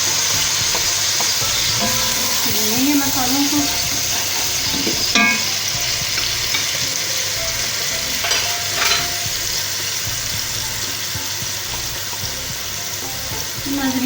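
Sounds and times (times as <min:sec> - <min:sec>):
food sizzling in hot oil: 0:00.0 - 0:14.0
metal clink: 0:01.4 - 0:02.6, 0:04.4 - 0:05.6, 0:08.2 - 0:09.2
spoon scraping a pot: 0:08.1 - 0:09.3.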